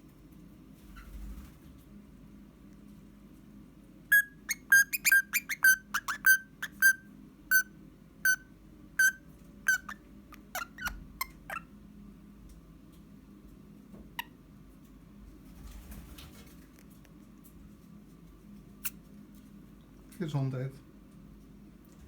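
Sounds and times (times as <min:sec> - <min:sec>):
parrot whistling piping notes: 0:04.1 - 0:07.7, 0:09.0 - 0:11.6.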